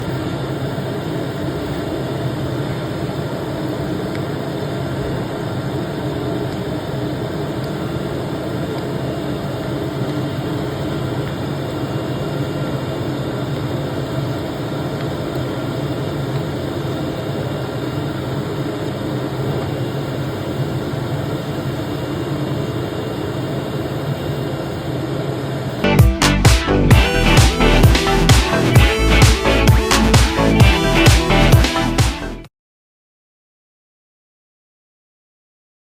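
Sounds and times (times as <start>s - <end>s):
cutting machine hum: 25.8s - 32.4s.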